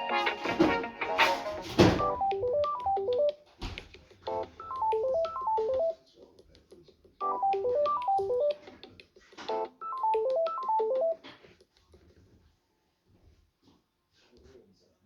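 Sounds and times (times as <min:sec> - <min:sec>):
ringtone melody: 0:00.0 - 0:03.4, 0:04.3 - 0:06.0, 0:07.2 - 0:08.6, 0:09.5 - 0:11.2.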